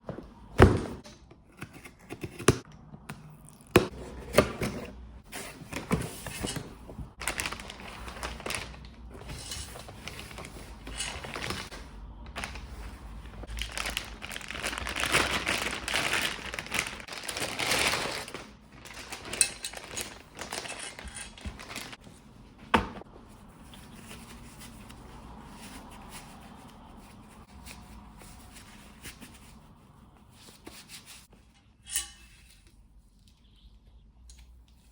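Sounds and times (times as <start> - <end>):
packaging crinkling and tearing: 7.1 - 9.1, 12.3 - 22.0.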